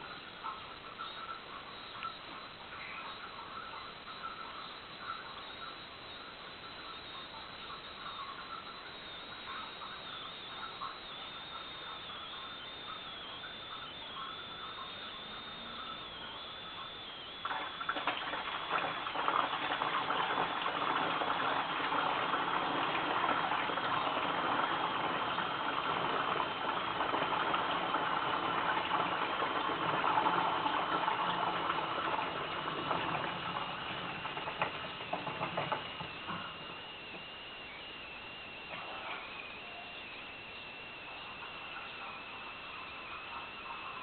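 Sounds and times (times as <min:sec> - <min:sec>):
thin high whine falling in pitch: 0:00.0 - 0:44.0
washing machine rattling and churning: 0:08.0 - 0:37.3.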